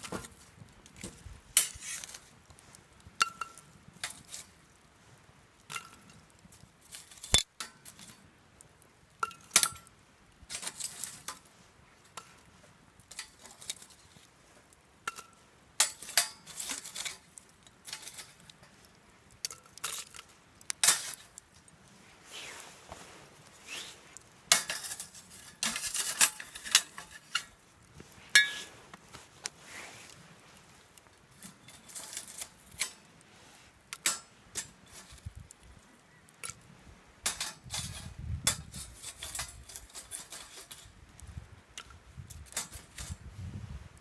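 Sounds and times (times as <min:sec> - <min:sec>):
metal cooking utensils clinking: 0:24.5 - 0:27.6, 0:28.4 - 0:28.7.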